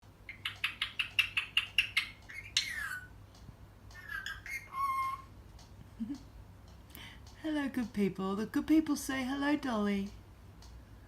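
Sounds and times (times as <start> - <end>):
parakeet chirping and squawking: 0.2 - 3.2, 3.9 - 5.4.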